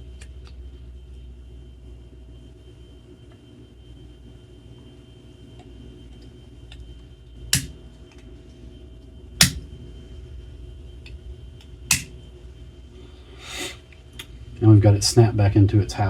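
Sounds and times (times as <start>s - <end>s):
plastic snapping into housing: 7.6s - 7.8s, 11.9s - 12.1s.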